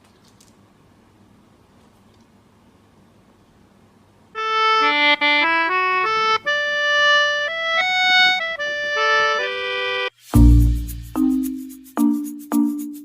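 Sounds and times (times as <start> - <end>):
reedy melody background music: 4.4 - 13.0.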